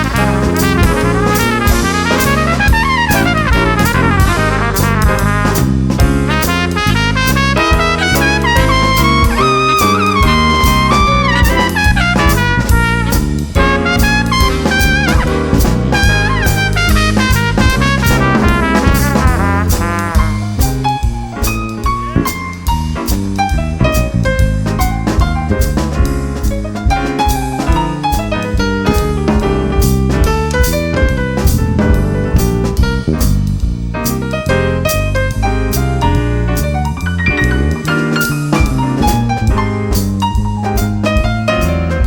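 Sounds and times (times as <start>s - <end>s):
trumpet solo: 0.0s - 22.4s
bass line: 0.0s - 42.0s
drum kit with cymbals: 0.0s - 42.0s.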